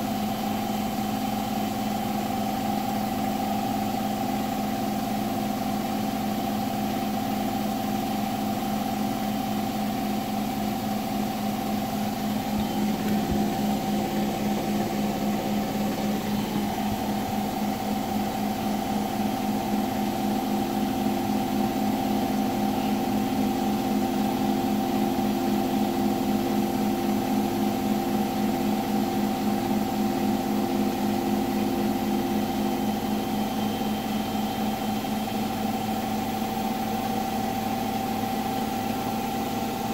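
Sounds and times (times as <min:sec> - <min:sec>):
washing machine spinning: 0:00.0 - 0:39.9
washing machine knocking: 0:11.7 - 0:24.8.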